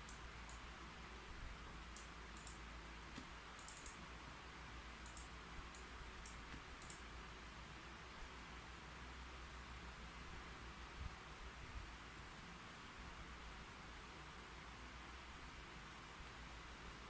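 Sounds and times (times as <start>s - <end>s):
faint steady hiss: 0.0s - 17.0s
keyboard key clicks: 3.2s - 4.0s.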